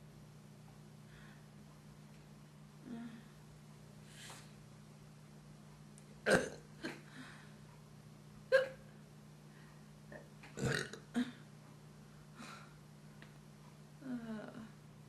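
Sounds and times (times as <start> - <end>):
woman burping: 6.2 - 7.0, 8.5 - 8.8, 10.1 - 11.4.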